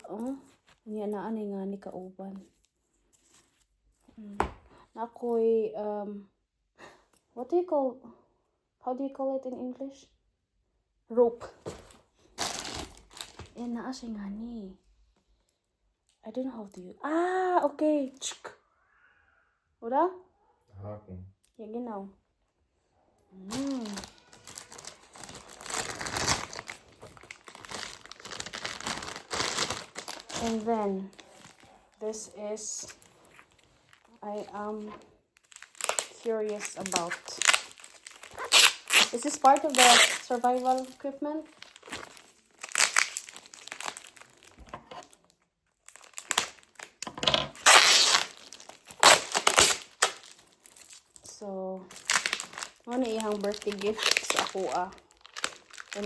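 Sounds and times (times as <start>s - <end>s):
packaging crinkling and rustling: 11.6s - 13.6s, 23.5s - 31.9s, 32.8s - 56.0s.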